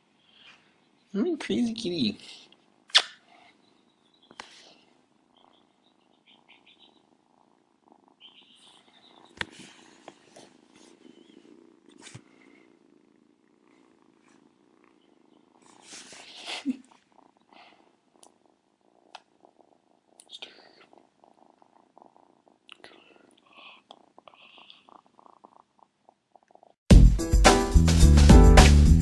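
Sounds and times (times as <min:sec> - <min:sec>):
kitten purring: 0:00.8 - 0:26.9
rustle: 0:13.5 - 0:18.0.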